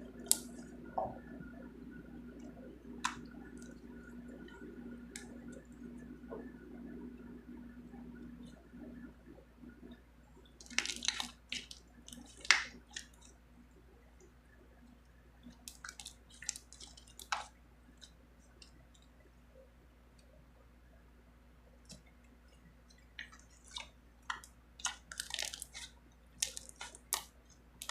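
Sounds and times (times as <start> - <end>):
slime squished by hand: 10.6 - 13.3, 15.5 - 18.2, 23.1 - 27.9.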